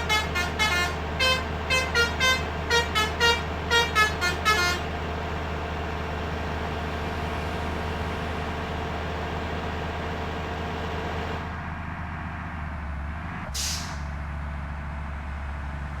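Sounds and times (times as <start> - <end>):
bus engine running: 0.0 - 16.0
road and traffic noise: 0.0 - 16.0
air brakes hiss: 13.6 - 14.2.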